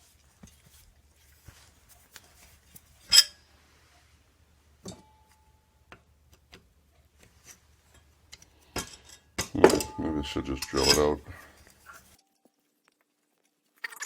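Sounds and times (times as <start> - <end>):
light clicks of metal parts: 7.0 - 12.4.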